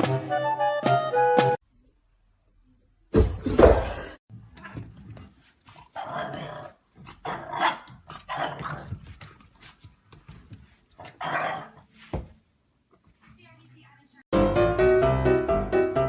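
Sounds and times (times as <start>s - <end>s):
dog growling and barking: 5.8s - 9.1s, 11.0s - 11.9s.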